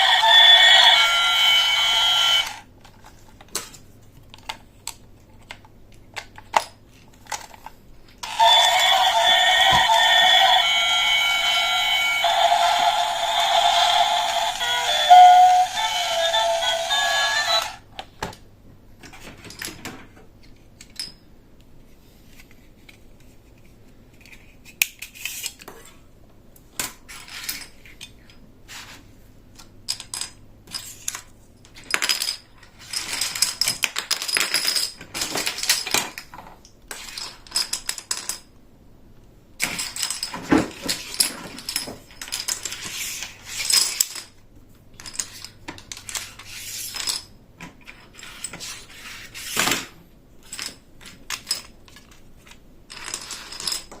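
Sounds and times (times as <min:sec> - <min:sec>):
plastic toy pieces rattling: 0:29.9 - 0:36.2, 0:39.7 - 0:44.3, 0:50.4 - 0:54.0.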